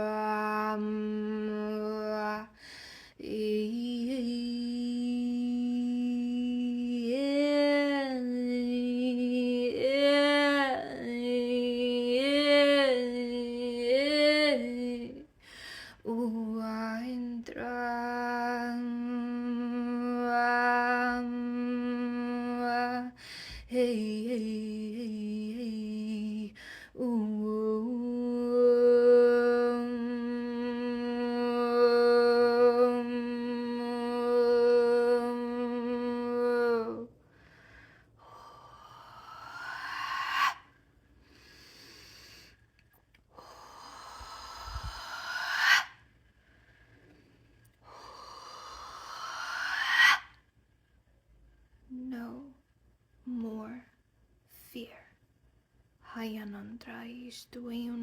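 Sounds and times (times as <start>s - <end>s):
woman breathing: 2.5s - 3.2s, 15.3s - 16.1s, 23.2s - 23.7s, 37.1s - 50.4s.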